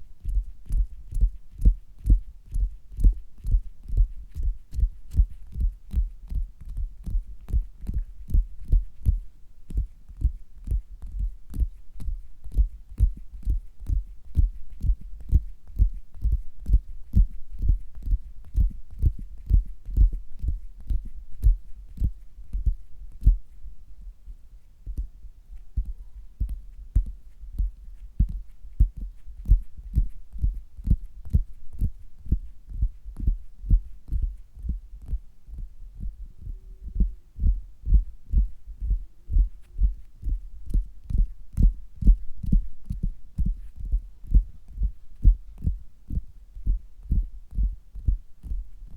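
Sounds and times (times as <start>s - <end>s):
dull thuds through stethoscope: 25.8s - 48.6s.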